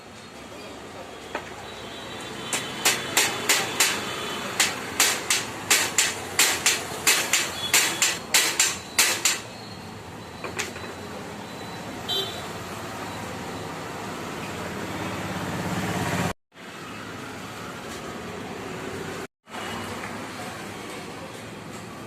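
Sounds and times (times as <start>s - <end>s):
hammer striking metal: 2.5s - 9.5s.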